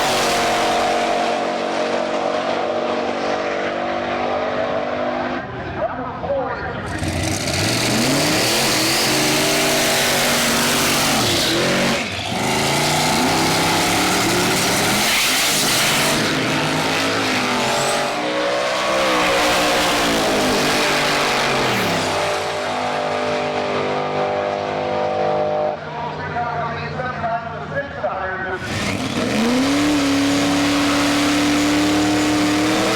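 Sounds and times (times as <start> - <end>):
race car engine revving: 0.0 - 5.7, 6.7 - 26.0, 28.5 - 32.9.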